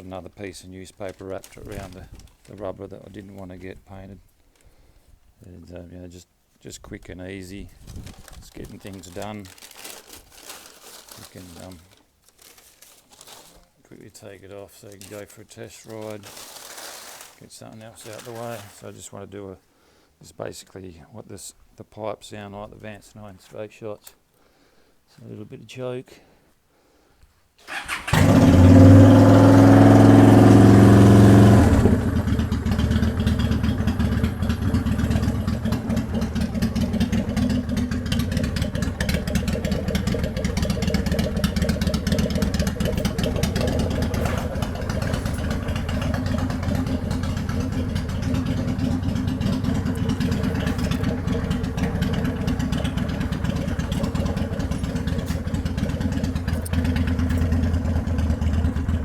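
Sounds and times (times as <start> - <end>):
motorcycle engine starting and idling: 27.7 - 59.0.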